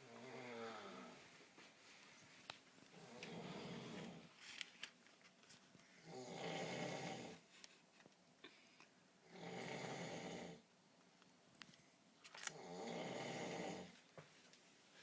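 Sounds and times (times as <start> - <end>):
man snoring: 0.0 - 1.2, 3.0 - 4.3, 6.0 - 7.4, 9.3 - 10.6, 12.5 - 13.9.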